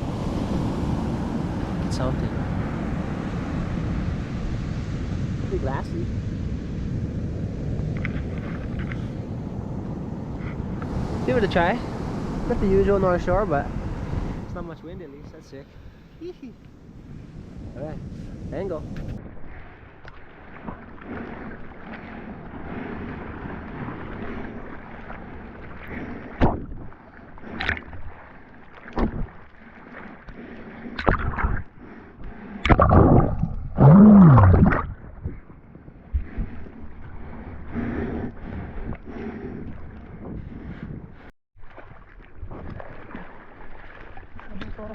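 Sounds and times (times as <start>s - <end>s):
rushes of water: 0.0s - 44.9s
water sloshing and splashing: 19.0s - 44.9s.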